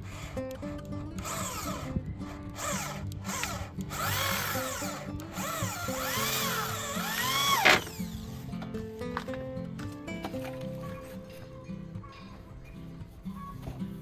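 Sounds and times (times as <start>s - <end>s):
power drill motor whining: 0.0s - 9.3s
background music: 0.0s - 14.0s.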